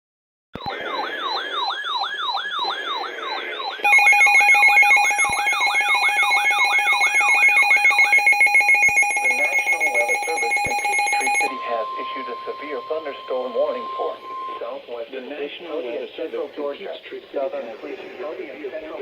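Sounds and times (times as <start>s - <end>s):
electronic siren sweeping down: 0.6s - 15.0s
pulsing electronic alarm tone: 0.6s - 15.0s.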